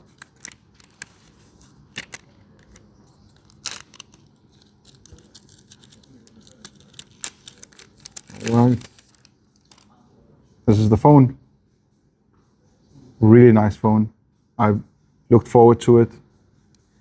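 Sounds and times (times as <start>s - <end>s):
cardboard and wrapper rustling: 0.0s - 9.9s
packaging scrape: 0.0s - 9.9s.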